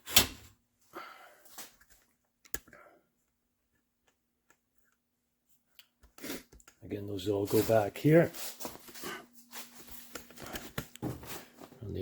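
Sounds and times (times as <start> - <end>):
soft handling rustle: 7.2 - 11.9.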